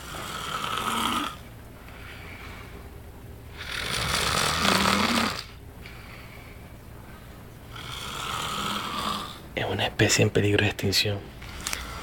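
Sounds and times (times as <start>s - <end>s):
man snoring: 0.0s - 1.4s, 3.5s - 5.6s, 7.7s - 9.4s.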